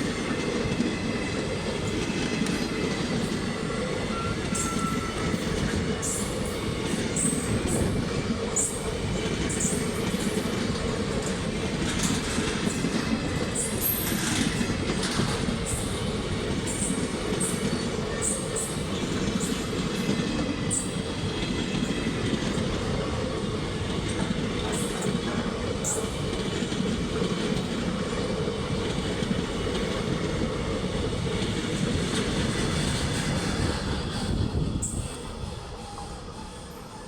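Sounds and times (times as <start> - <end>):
train wheels rumbling on rails: 0.0 - 37.0
high-pitched wheel squeals: 4.0 - 6.3.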